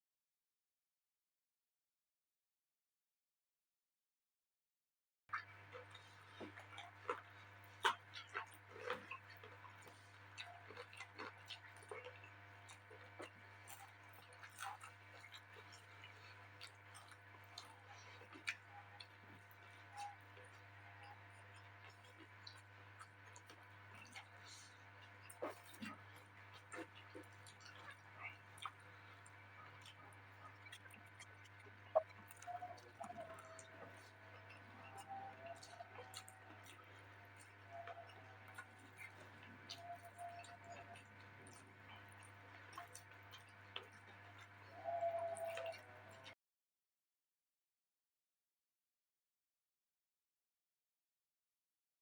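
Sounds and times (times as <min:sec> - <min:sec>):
chewing: 0:05.3 - 0:46.3
person chewing: 0:07.8 - 0:12.0
mouth clicks and smacks: 0:28.6 - 0:28.8.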